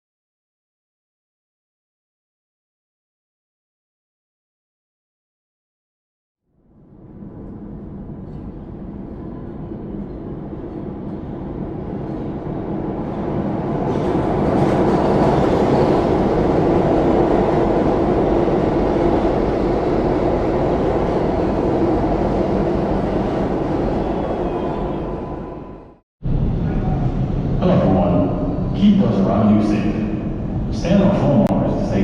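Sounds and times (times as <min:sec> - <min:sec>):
subway train rumbling: 0:06.5 - 0:32.0.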